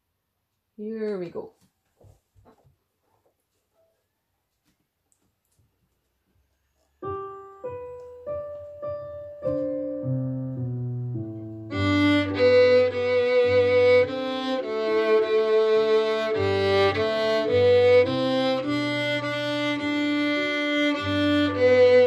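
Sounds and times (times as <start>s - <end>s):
piano accompaniment: 6.9s - 22.0s
violin playing bowed melody: 11.6s - 22.0s.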